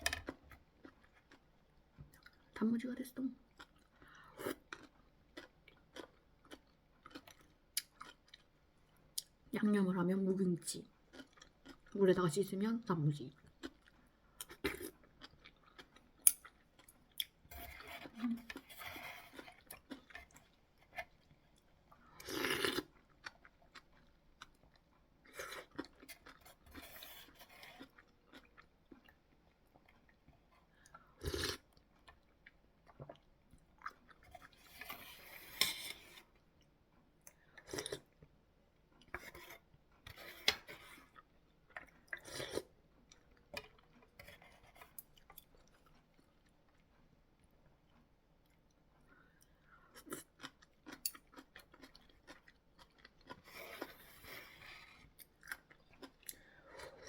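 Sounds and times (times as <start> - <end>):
chewing and crunching: 0.2 - 2.6, 3.4 - 9.4, 10.9 - 12.0, 13.3 - 57.0.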